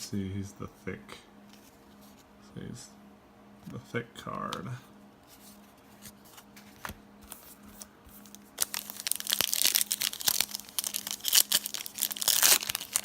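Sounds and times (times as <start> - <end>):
wrapper tearing and crinkling: 7.8 - 13.0.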